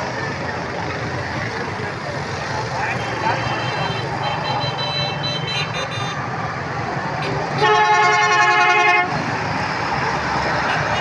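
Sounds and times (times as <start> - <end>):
road traffic noise: 0.0 - 11.0
vehicle horn blast: 3.4 - 6.2, 7.2 - 9.1.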